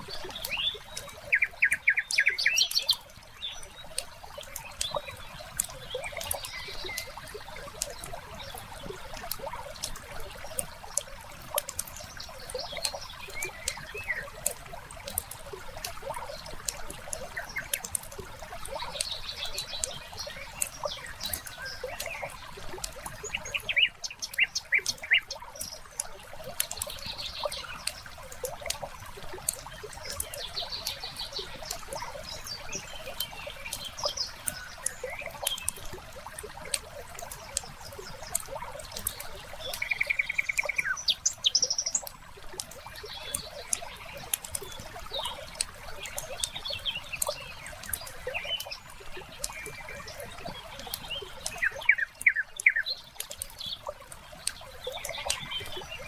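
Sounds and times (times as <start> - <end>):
songbirds chirping and trilling: 0.0 - 56.0
wood fire crackling and popping: 53.1 - 55.4.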